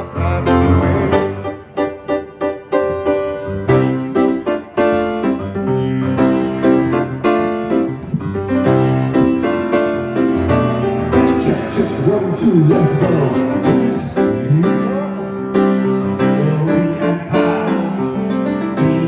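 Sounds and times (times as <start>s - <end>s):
slow solo piano chords: 0.0s - 19.0s.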